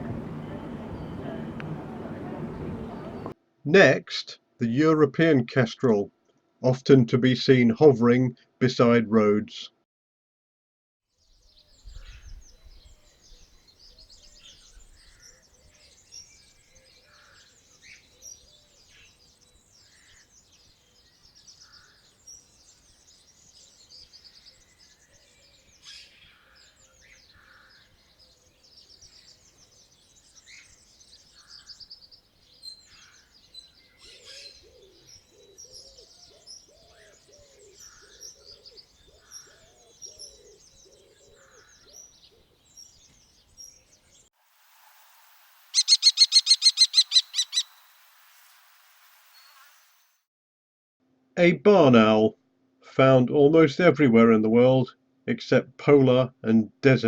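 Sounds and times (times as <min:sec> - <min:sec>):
low repeating bird call: 0:00.0 - 0:03.4, 0:45.6 - 0:49.8
small birds chirping: 0:00.0 - 0:03.4, 0:11.2 - 0:50.2.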